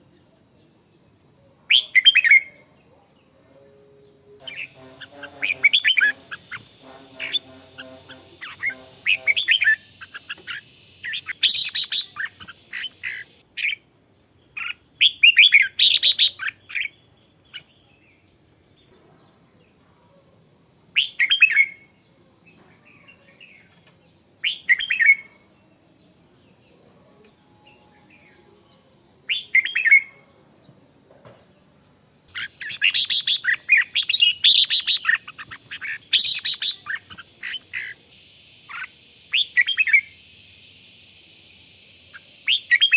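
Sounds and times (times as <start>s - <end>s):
steady high-pitched tone: 4.3s - 13.4s
birds singing: 4.4s - 13.8s, 14.4s - 18.2s, 32.3s - 40.2s.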